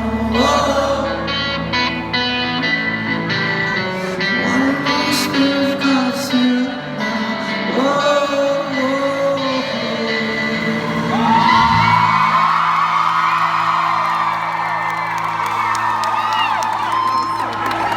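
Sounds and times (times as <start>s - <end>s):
man singing with vibrato: 0.0s - 12.3s
guitar chords: 0.0s - 12.9s.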